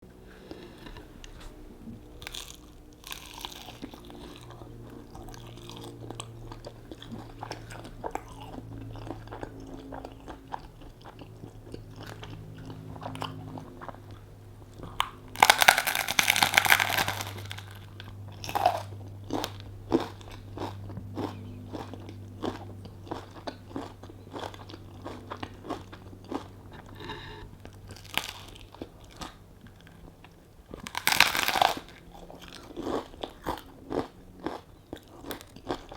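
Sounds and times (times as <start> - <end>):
chewing crunchy food: 0.1 - 35.9
crunching bite: 0.4 - 35.9
small crunches and clicks: 13.1 - 22.6, 26.3 - 35.9.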